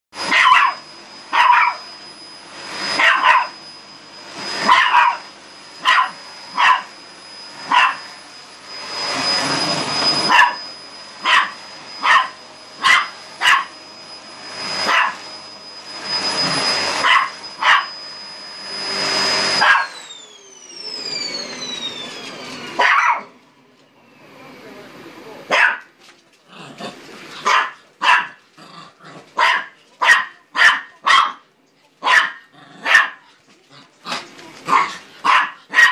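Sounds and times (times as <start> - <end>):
vacuum winding down: 0.2 - 25.5, 26.4 - 27.5, 34.0 - 35.7
vacuum cleaner motor whine: 0.2 - 31.2, 32.0 - 35.9
dog barking: 0.3 - 0.8, 1.4 - 1.8, 3.0 - 3.5, 4.7 - 5.2, 5.8 - 6.9, 7.7 - 8.0, 10.3 - 10.6, 11.2 - 13.7, 14.9 - 15.2, 17.0 - 17.9, 19.6 - 19.9, 22.8 - 23.3, 25.5 - 25.9, 27.4 - 28.4, 29.4 - 31.4, 32.0 - 33.2, 34.7 - 35.9.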